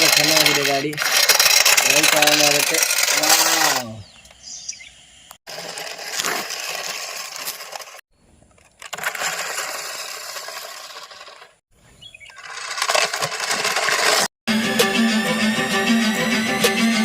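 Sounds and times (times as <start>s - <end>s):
toy car motor whirring: 0.0s - 4.4s, 5.4s - 8.0s, 8.8s - 11.6s, 12.3s - 14.3s.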